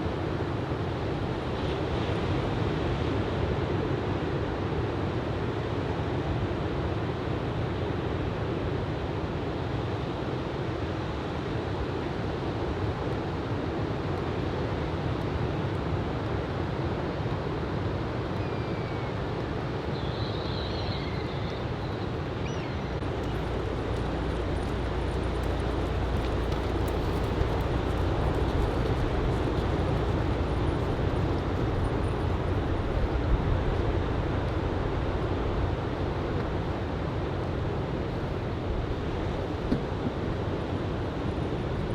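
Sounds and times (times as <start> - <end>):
wind rumble on microphone: 20.6 - 41.9.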